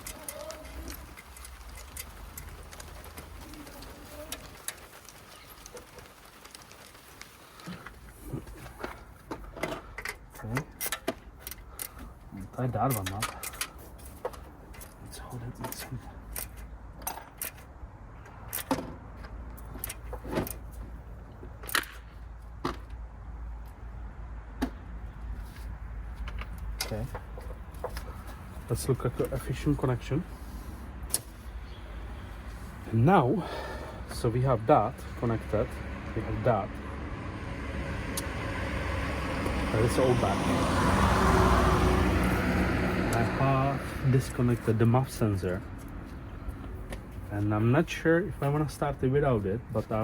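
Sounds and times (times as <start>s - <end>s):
sharp clicks and light knocks: 0.0s - 23.8s, 26.0s - 30.0s.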